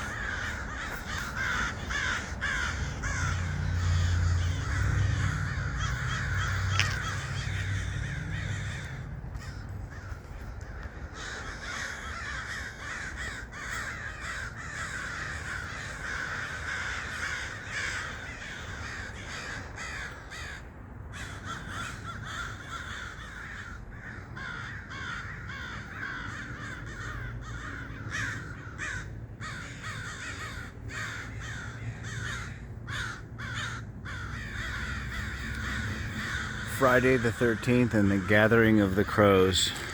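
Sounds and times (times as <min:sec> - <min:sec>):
low rumble: 0:00.0 - 0:10.6
crows cawing: 0:00.0 - 0:39.9.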